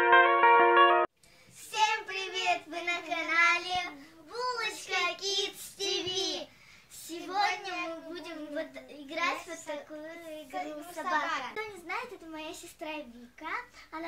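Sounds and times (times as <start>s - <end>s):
musical intro: 0.0s - 1.1s
girl's sing-song voice: 1.5s - 11.7s.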